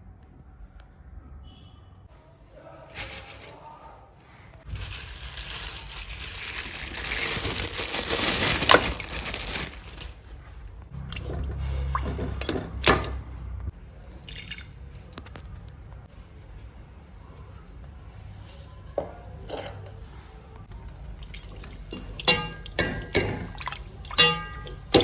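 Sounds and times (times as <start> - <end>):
water running and splashing: 10.9 - 13.2, 20.9 - 25.0.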